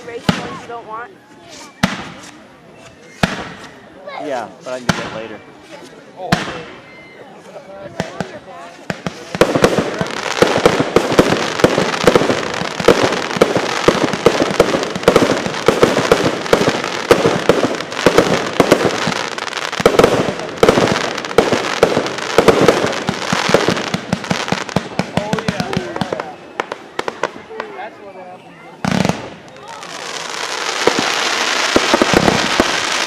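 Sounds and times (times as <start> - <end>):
fireworks bangs and crackles: 0.0 - 6.9, 7.7 - 28.2, 28.8 - 33.0.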